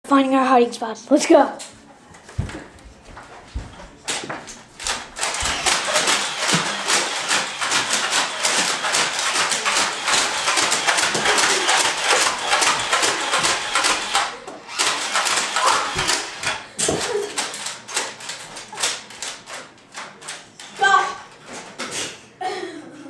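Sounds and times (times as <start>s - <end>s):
hurried footsteps: 1.7s - 14.4s.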